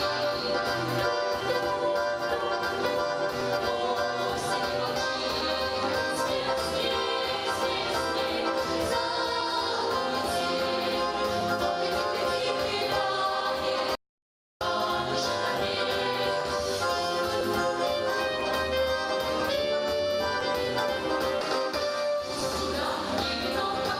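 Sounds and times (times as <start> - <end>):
song accompaniment music: 0.0 - 14.0, 14.6 - 23.9.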